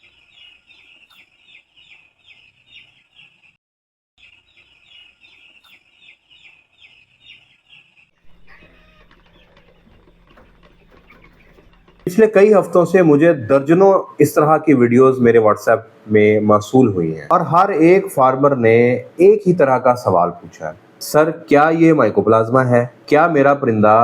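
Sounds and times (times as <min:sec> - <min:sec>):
chicks peeping: 0:04.2 - 0:14.2
faint bird calls: 0:04.9 - 0:14.4.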